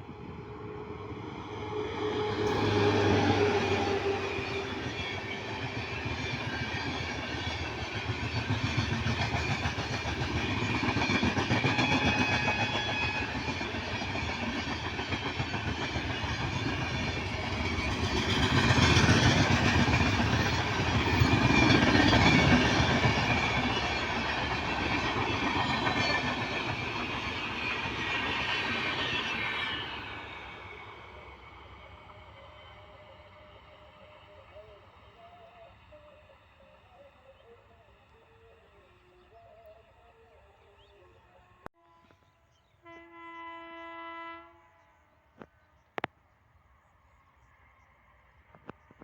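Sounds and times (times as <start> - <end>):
train wheels clattering on rails: 2.4 - 30.3.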